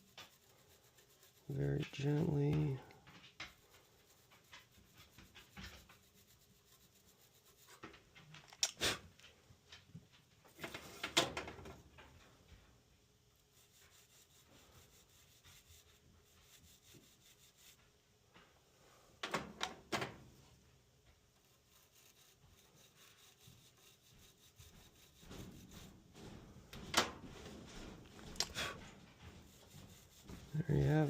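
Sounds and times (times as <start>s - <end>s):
wire brush scrubbing metal: 0.0s - 2.8s, 13.5s - 17.8s, 21.4s - 26.0s, 28.3s - 31.0s.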